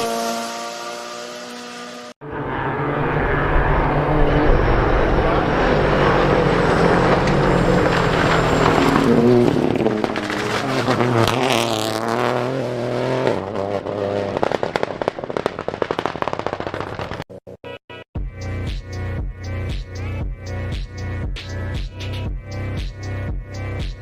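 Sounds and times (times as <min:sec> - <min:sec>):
rally car engine at full throttle: 0:00.0 - 0:17.2, 0:18.3 - 0:24.0
exhaust cracks and bangs: 0:14.2 - 0:17.3
electronic music with steady beat: 0:18.2 - 0:24.0.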